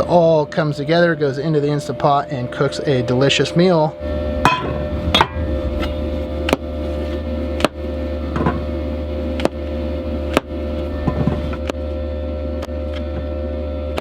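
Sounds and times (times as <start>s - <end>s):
heater buzzing hum: 3.8s - 13.1s.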